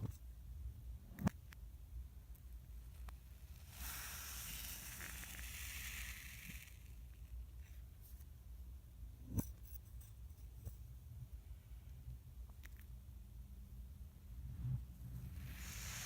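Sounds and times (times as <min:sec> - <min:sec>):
sand being scraped: 0:03.5 - 0:07.0, 0:15.2 - 0:16.0.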